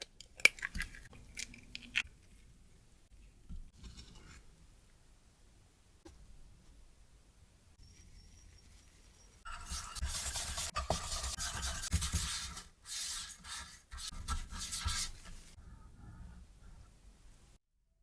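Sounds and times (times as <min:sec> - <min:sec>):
kitchen utensil scraping: 0:09.4 - 0:15.2.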